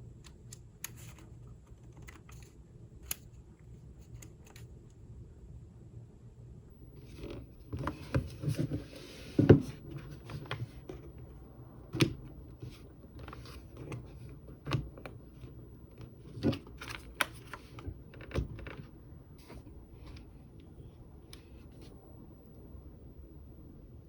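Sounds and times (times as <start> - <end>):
plastic clicks and knocks: 11.8 - 18.9.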